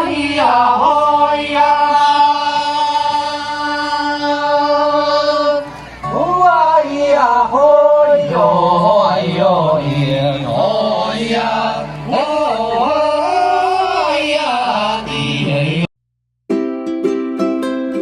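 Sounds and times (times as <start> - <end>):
person chanting a melody: 0.0 - 15.9
ukulele strumming chords: 16.5 - 18.0.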